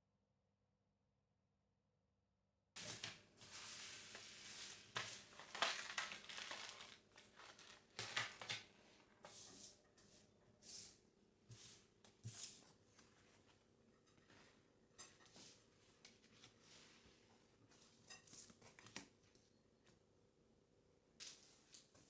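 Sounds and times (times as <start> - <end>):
rustling and crunching handling: 2.8 - 9.1.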